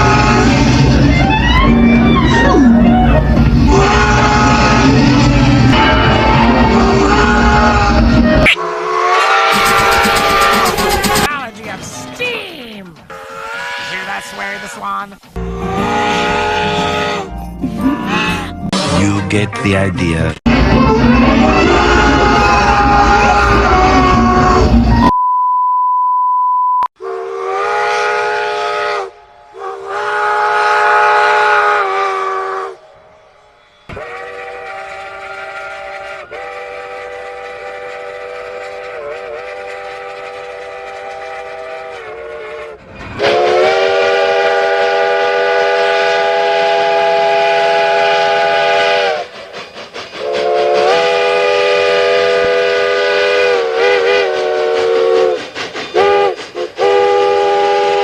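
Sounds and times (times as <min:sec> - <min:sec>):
steam train whistle blasts: 0:03.6 - 0:11.3, 0:15.4 - 0:17.3, 0:27.0 - 0:49.4, 0:50.2 - 0:58.0
short beep: 0:25.0 - 0:26.9.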